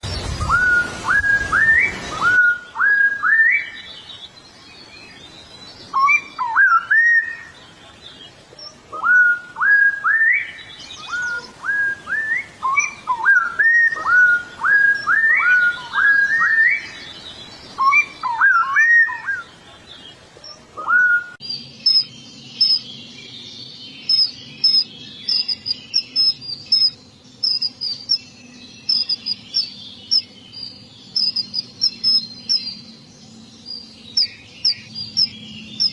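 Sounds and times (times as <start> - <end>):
songbird whistling rising notes: 0.0 - 4.2, 5.0 - 7.5, 8.6 - 19.5, 20.4 - 33.0, 33.6 - 35.9
high-pitched bird chirping: 21.4 - 22.9, 24.0 - 32.8, 33.7 - 35.9.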